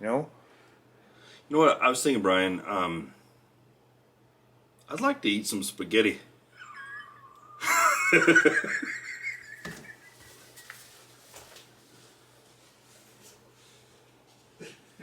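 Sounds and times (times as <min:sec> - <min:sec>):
people laughing: 0:06.6 - 0:10.8.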